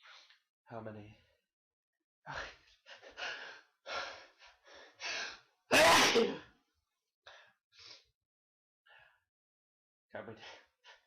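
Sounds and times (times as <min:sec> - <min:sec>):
person sneezing: 0:05.7 - 0:06.5.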